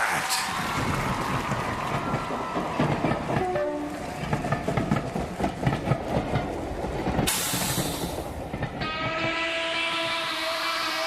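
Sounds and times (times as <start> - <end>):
train carriage clattering: 0.1 - 11.0
loud air hiss: 7.3 - 8.4.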